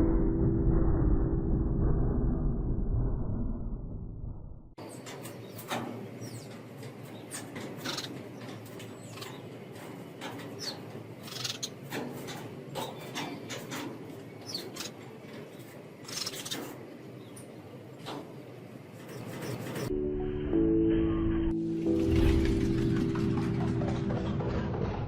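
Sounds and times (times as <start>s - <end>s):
small birds chirping: 4.8s - 19.9s.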